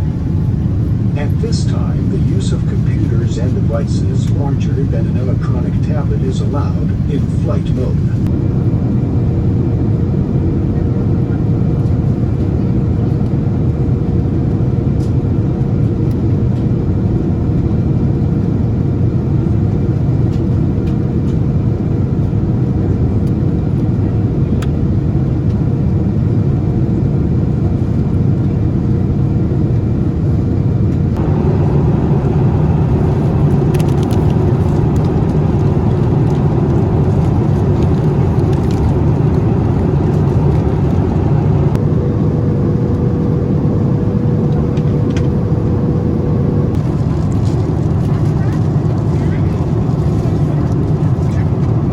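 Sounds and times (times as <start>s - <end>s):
faint steady hum: 0.0s - 9.5s
jet cabin engine rumble: 0.0s - 51.9s.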